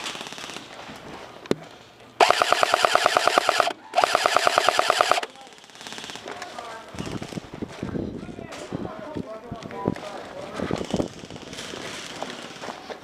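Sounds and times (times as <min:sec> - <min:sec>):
airsoft gun full-auto bursts: 0:02.2 - 0:06.3.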